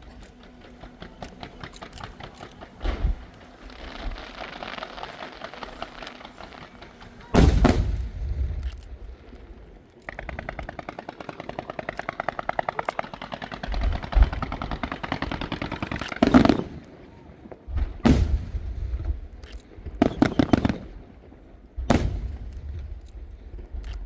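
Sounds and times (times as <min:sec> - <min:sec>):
fireworks crackling: 0:00.0 - 0:23.8
firework shell burst: 0:00.8 - 0:09.5, 0:21.9 - 0:23.7.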